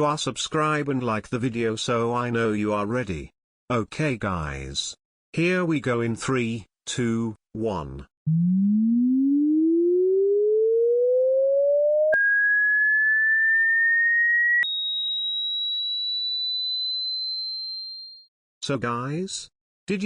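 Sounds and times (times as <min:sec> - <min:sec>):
rising sine-wave test tone: 0:08.3 - 0:18.2.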